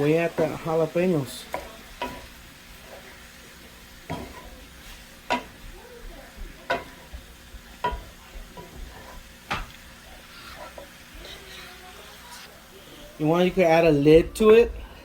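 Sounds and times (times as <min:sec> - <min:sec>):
meat sizzling in a pan: 0:00.0 - 0:15.0
utensil knocking against pan: 0:01.5 - 0:02.3, 0:04.1 - 0:04.5, 0:06.4 - 0:09.8.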